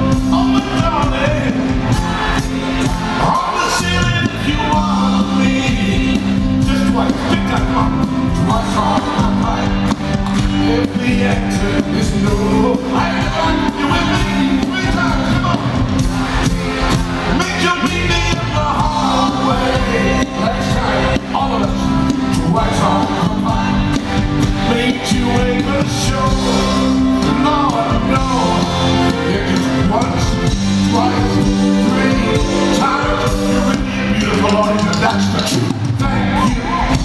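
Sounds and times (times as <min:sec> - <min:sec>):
lead singer singing: 0:00.0 - 0:37.0
live band playing pop song: 0:00.0 - 0:37.0.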